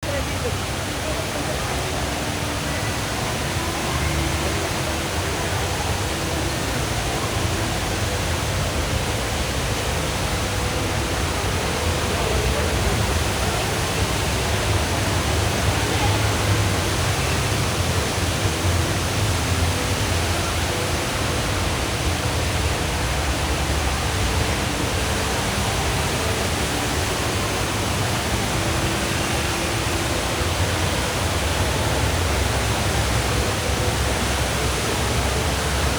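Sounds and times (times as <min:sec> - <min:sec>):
murmur of distant voices: 0:00.0 - 0:35.9
waterfall pouring into pool: 0:00.0 - 0:35.9.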